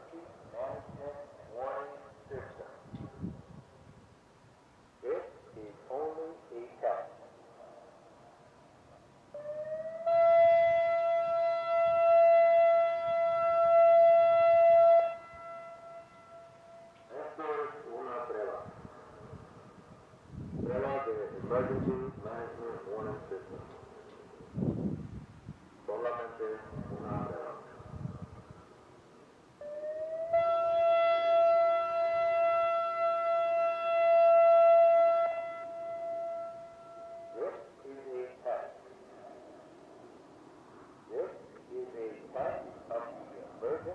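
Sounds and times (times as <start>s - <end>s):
electronic siren steady tone: 9.3s - 17.2s, 29.6s - 37.7s.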